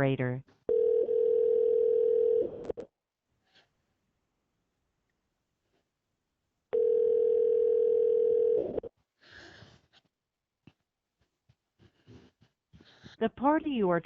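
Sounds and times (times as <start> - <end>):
telephone ringback tone: 0.7 - 2.6, 6.8 - 8.8.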